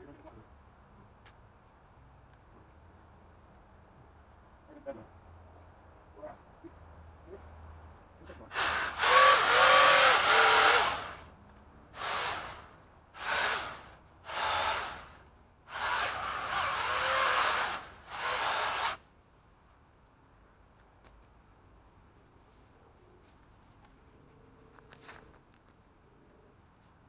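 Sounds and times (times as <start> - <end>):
pole saw motor whining: 8.5 - 11.2, 12.0 - 19.0.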